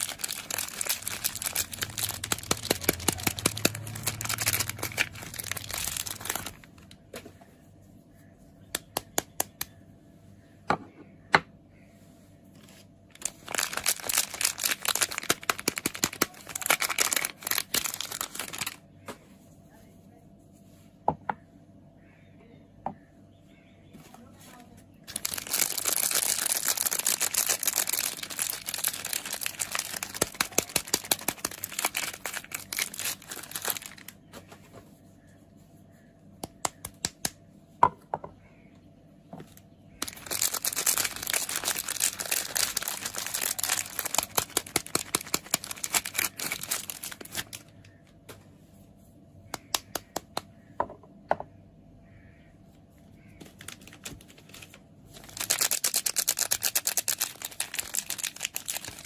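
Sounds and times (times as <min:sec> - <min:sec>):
wrapper crinkling and tearing: 0:00.0 - 0:07.0, 0:12.6 - 0:18.8, 0:25.1 - 0:34.6, 0:40.0 - 0:48.0, 0:53.4 - 0:59.0.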